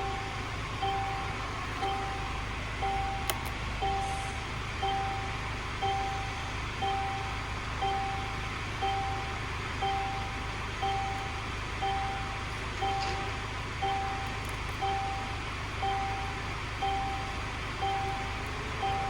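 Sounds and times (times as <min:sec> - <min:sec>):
diesel engine idling: 0:00.0 - 0:19.0
electronic warning beeper: 0:00.0 - 0:19.0.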